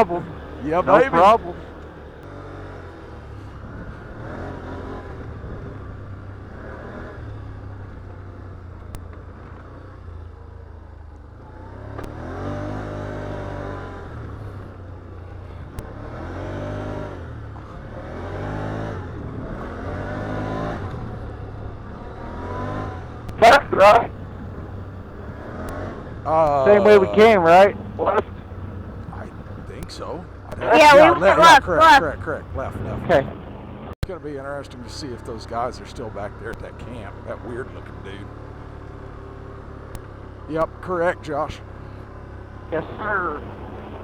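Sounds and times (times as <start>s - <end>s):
atv engine revving: 23.6s - 25.7s, 30.5s - 34.0s.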